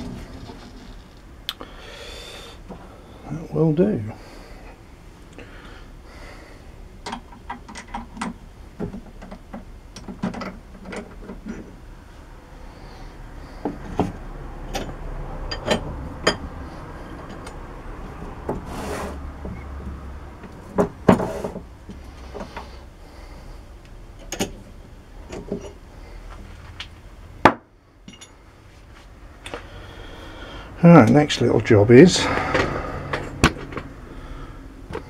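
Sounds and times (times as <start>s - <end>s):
low steady hum: 0.0s - 35.0s
tools clicking and knocking: 7.0s - 11.6s.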